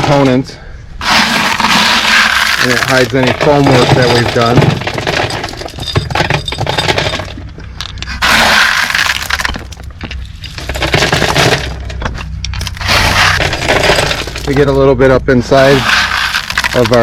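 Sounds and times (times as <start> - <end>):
gravel clattering: 0.0 - 17.0.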